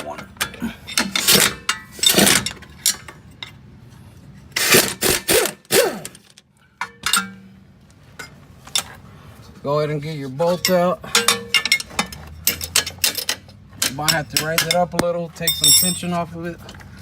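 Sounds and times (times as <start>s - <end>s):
impact wrench bursts: 4.6s - 6.2s.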